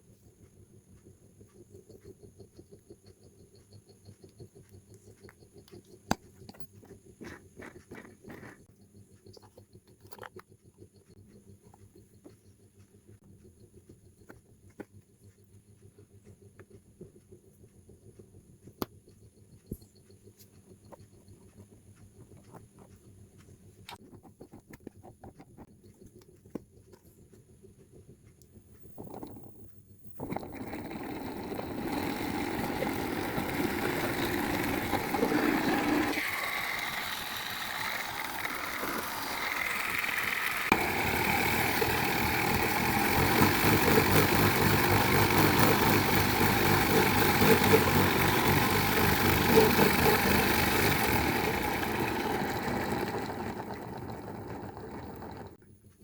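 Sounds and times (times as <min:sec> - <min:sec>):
electric motor running: 0:30.2 - 0:55.6.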